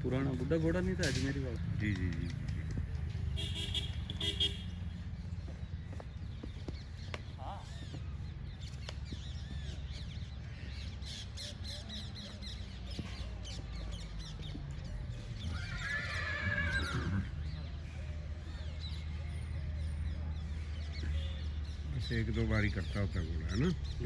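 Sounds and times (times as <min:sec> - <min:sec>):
birds chirping: 0:00.0 - 0:24.0.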